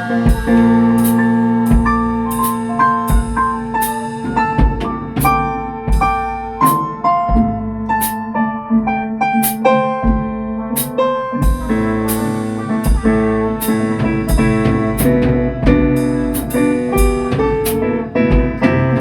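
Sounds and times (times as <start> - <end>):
drum kit beat: 0.0 - 19.0
keyboard playing melody and chords: 0.0 - 19.0.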